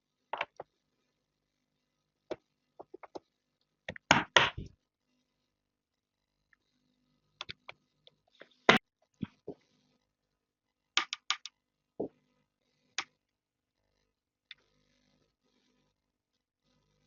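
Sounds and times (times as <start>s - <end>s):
computer components clicking and knocking: 0.4s - 0.6s, 3.9s - 4.7s, 11.0s - 11.6s.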